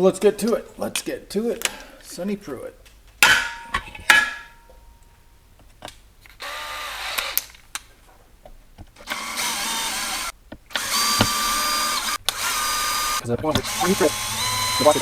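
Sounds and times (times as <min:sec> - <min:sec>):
sharp metallic clinks: 0:00.4 - 0:06.4
cordless power driver running: 0:06.2 - 0:08.0, 0:08.8 - 0:15.0.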